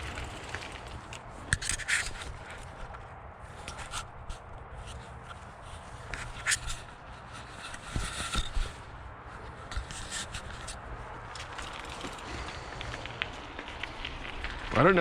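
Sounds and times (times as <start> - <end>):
scrapes and rustling from handling: 1.6 - 12.3.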